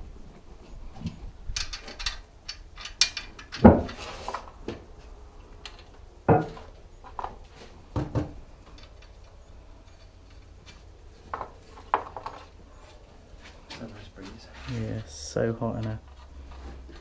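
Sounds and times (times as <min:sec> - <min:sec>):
tools and metal parts clinking: 0:01.5 - 0:04.6, 0:05.5 - 0:07.6, 0:08.6 - 0:12.5.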